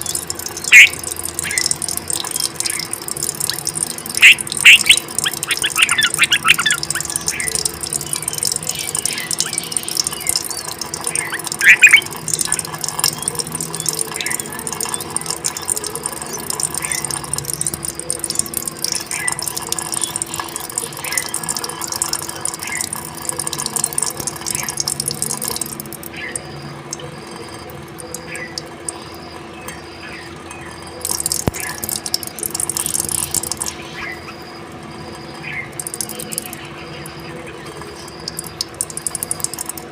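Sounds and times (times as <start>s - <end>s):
bulbul calls: 0.0s - 23.0s.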